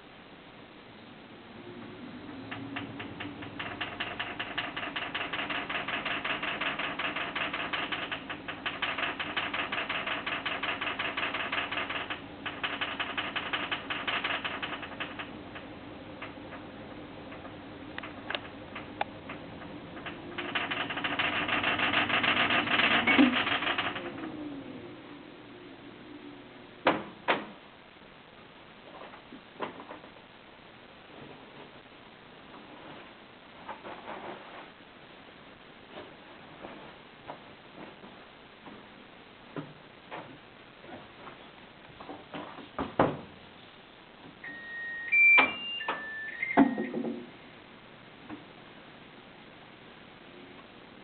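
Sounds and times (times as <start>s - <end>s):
washing machine rattling: 2.6s - 16.7s, 17.3s - 24.2s.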